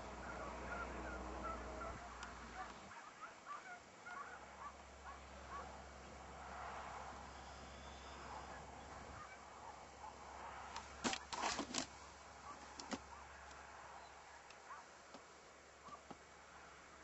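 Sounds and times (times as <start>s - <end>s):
hounds yelping: 0.1s - 5.9s, 8.0s - 10.3s, 12.4s - 15.0s.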